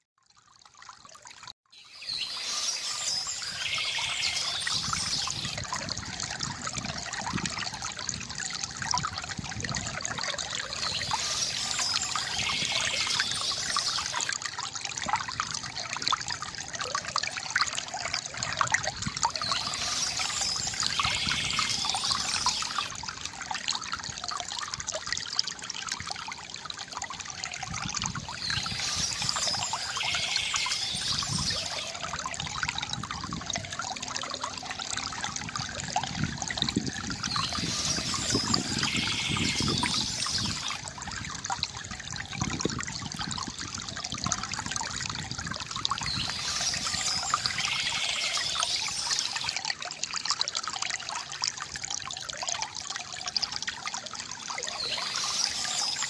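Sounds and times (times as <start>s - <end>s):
fountain water trickling and splashing: 0.0s - 56.0s
birds chirping: 1.8s - 5.6s, 10.6s - 14.3s, 19.3s - 22.9s, 28.3s - 31.9s, 37.3s - 40.8s, 46.1s - 49.6s, 54.7s - 56.0s.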